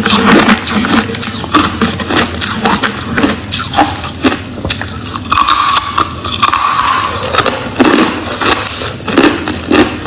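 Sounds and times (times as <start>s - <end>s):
ice being chewed: 0.0s - 10.0s.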